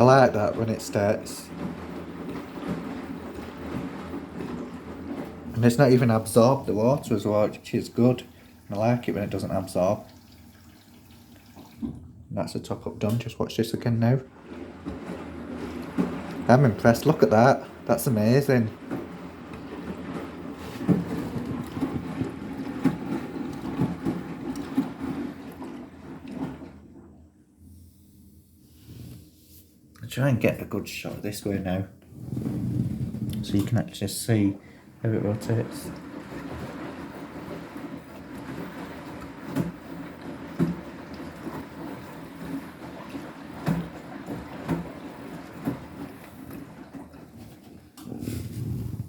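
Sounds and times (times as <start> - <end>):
washing machine churning: 0.0 - 49.0
soft thuds in washing drum: 11.6 - 12.2, 14.5 - 26.8, 35.4 - 49.0.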